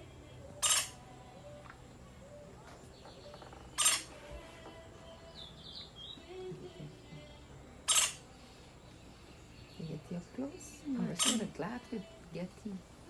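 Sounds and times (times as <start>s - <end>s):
bird squawking: 0.6s - 1.0s, 3.3s - 4.1s, 7.8s - 8.3s, 11.1s - 11.6s
high bird chirp: 0.6s - 1.0s, 2.9s - 4.1s, 5.1s - 6.5s, 7.9s - 8.2s, 11.2s - 11.5s.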